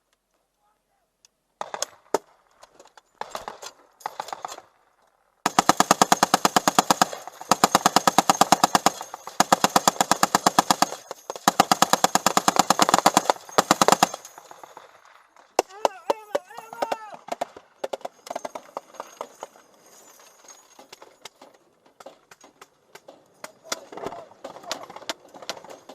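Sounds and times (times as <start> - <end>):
machine gun firing bursts: 1.6 - 2.2, 3.2 - 4.7, 5.4 - 15.9.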